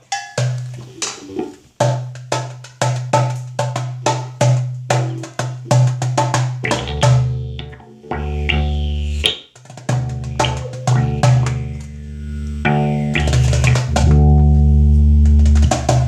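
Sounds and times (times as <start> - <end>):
drum beat: 0.0 - 12.0, 12.7 - 14.6
low bass note: 6.6 - 9.3, 10.0 - 16.0.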